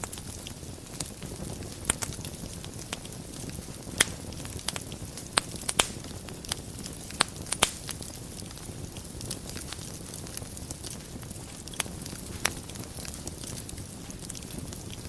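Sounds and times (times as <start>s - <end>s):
wood fire crackling: 0.0s - 15.0s.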